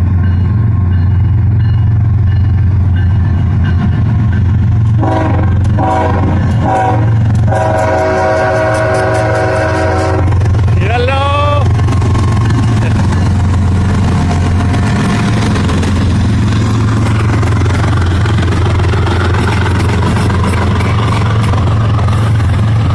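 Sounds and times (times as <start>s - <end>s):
diesel locomotive engine running: 0.0s - 22.9s
locomotive air horn blasts: 5.0s - 10.4s.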